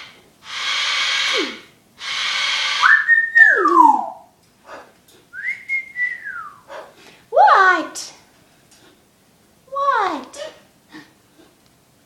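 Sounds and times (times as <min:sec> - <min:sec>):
bird hissing rasps: 0:00.0 - 0:03.1
bird whistle rising and falling: 0:00.5 - 0:04.3, 0:05.4 - 0:06.6.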